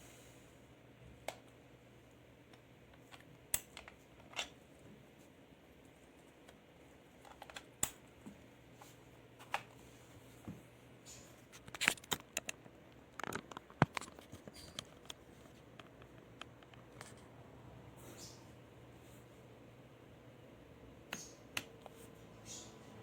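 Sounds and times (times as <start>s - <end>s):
light clicks and rustles: 10.4s - 17.3s.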